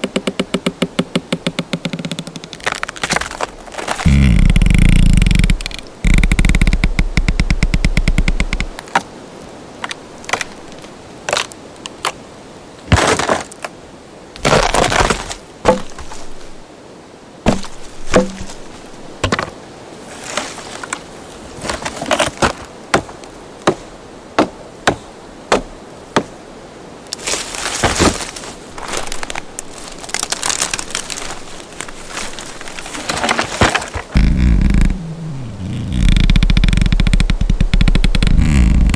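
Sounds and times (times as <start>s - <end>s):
wood cracking and snapping: 0.0s - 9.1s, 9.8s - 12.2s, 14.4s - 16.6s, 17.5s - 19.5s, 27.2s - 38.9s
wood splintering crashes: 14.4s - 16.6s, 17.5s - 19.5s, 32.1s - 34.4s.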